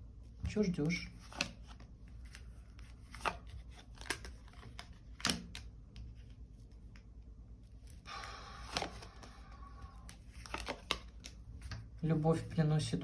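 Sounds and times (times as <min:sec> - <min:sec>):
cards rustling: 0:00.6 - 0:11.8
cards snapping and clicking: 0:01.2 - 0:02.4, 0:03.0 - 0:06.1, 0:08.2 - 0:09.4, 0:10.0 - 0:11.4.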